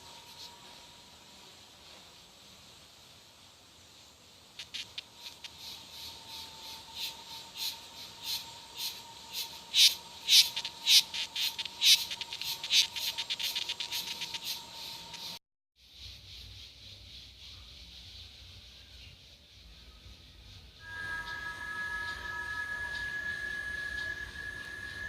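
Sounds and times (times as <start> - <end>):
cicada buzzing pulses: 4.0 - 18.0, 19.9 - 25.0.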